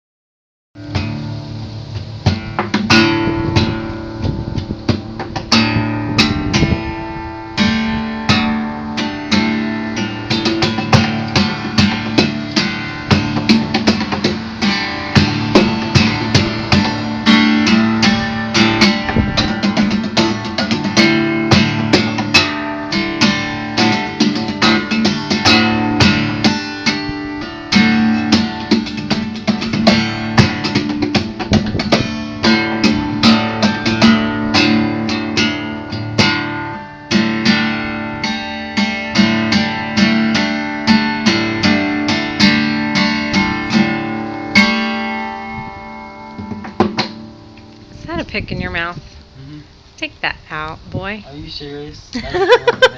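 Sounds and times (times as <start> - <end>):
guitar plucking and strumming: 0.8 - 51.2, 52.2 - 52.9.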